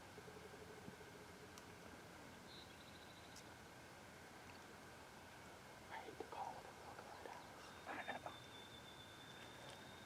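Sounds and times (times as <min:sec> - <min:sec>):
small bird chirping: 0:02.4 - 0:03.5.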